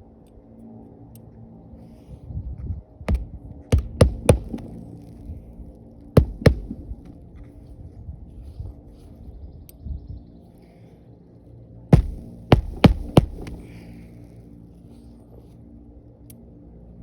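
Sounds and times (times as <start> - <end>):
sharp knocks: 3.1 - 4.8, 6.2 - 7.1, 12.0 - 13.7.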